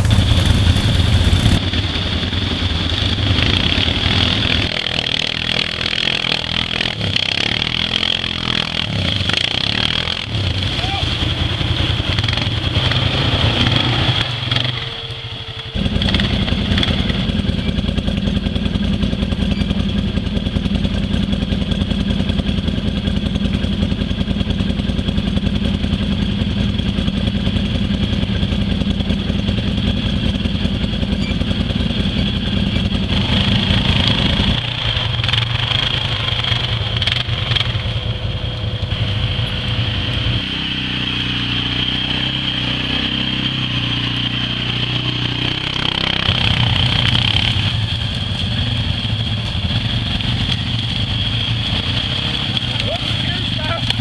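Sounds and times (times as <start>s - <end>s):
quad engine running: 0.0s - 54.0s.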